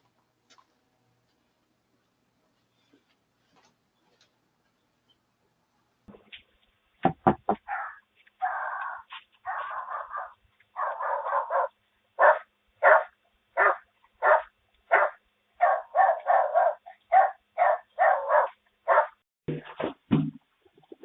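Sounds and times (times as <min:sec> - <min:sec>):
dog barking: 0:07.7 - 0:19.2.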